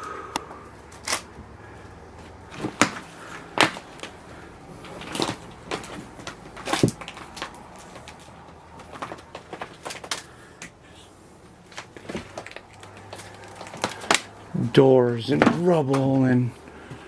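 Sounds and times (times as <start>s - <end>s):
debris crunching underfoot: 2.2s - 10.8s, 11.4s - 16.3s.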